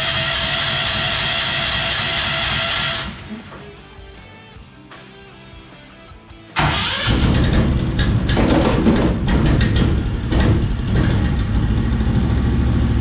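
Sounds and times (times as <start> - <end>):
small gasoline engine running: 0.0 - 3.3, 6.6 - 13.0.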